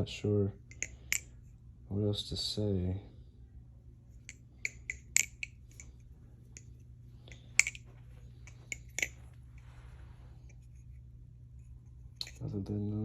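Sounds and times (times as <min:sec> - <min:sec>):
metal knife clicking and clacking: 0:04.3 - 0:05.9, 0:07.6 - 0:07.8, 0:08.7 - 0:09.2.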